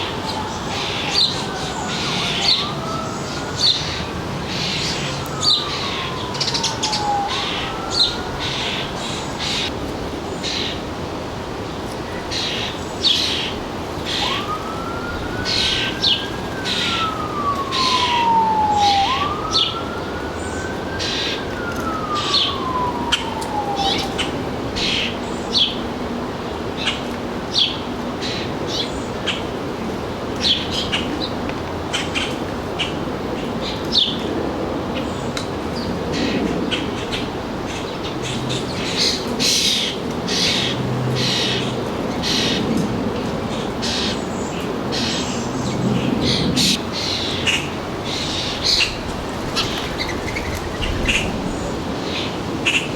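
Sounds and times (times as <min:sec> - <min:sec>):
emergency vehicle siren wailing: 0:00.0 - 0:10.4, 0:12.2 - 0:52.9
small birds chirping: 0:43.5 - 0:51.8.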